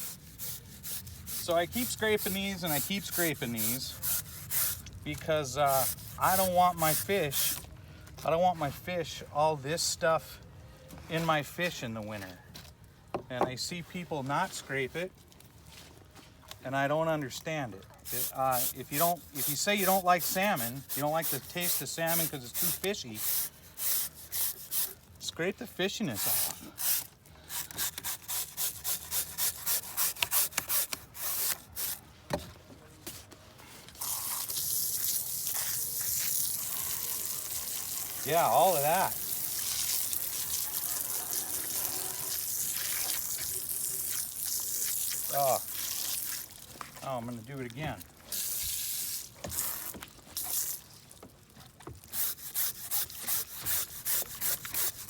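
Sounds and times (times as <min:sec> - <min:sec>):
blade scraping raw fish: 0:00.0 - 0:05.0, 0:52.0 - 0:55.0.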